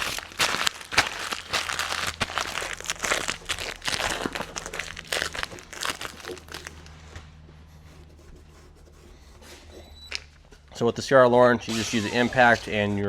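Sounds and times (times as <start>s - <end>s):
tape crinkling and tearing: 0.0s - 7.0s, 11.7s - 12.9s.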